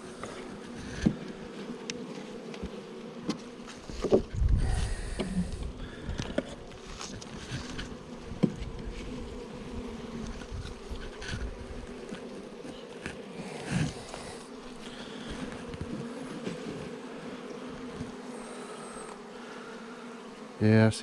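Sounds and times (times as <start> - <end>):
bees buzzing: 0.0 - 21.0
knocks of hive equipment: 8.4 - 8.8.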